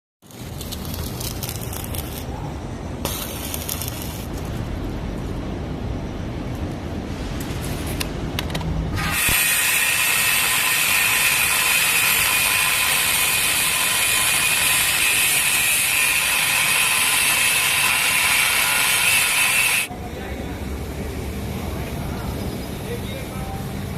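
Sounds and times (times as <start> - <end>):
loud harsh hiss with faint whine: 8.9 - 19.9.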